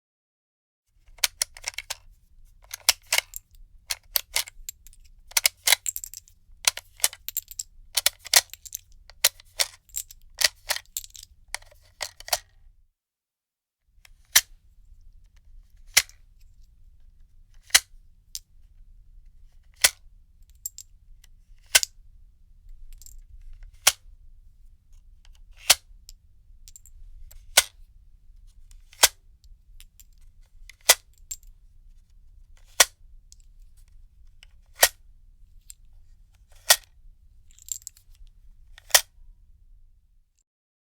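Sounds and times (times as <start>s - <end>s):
gun magazine metallic clicks: 30.8s - 31.4s, 34.8s - 35.0s, 36.6s - 36.9s, 38.8s - 39.1s.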